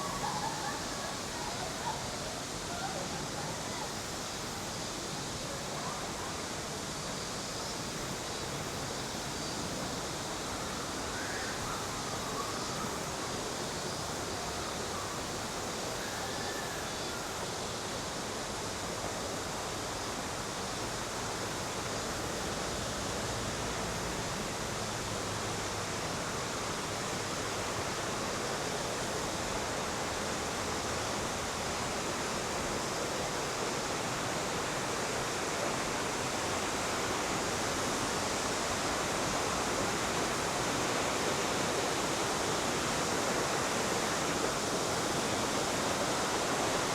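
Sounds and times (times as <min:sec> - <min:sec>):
river water rushing: 0:17.4 - 0:46.9.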